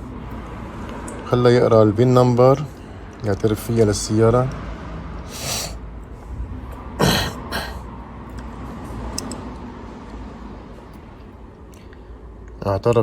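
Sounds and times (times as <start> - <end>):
man clearing his throat: 7.0 - 7.8.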